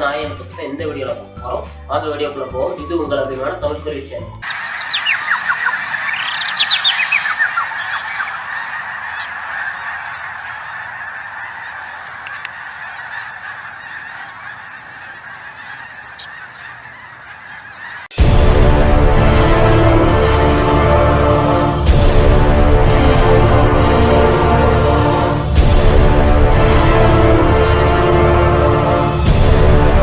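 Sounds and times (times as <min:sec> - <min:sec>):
birds calling: 0:04.2 - 0:18.2
quick falling bird calls: 0:04.4 - 0:18.2
loud music: 0:18.1 - 0:30.0.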